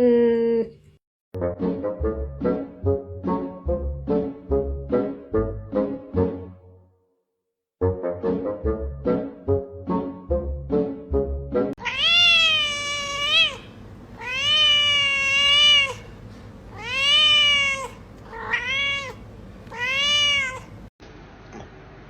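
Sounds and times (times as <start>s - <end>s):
music with short repeated notes: 1.4s - 6.9s, 7.8s - 11.8s
cat meowing: 11.8s - 20.8s.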